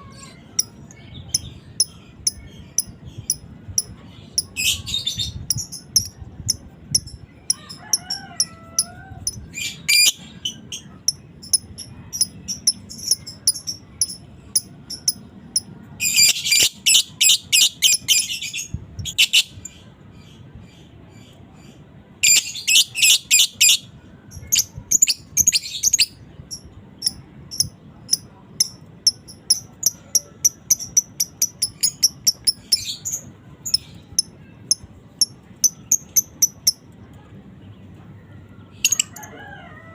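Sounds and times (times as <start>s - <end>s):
lovebird chirping: 24.4s - 36.9s.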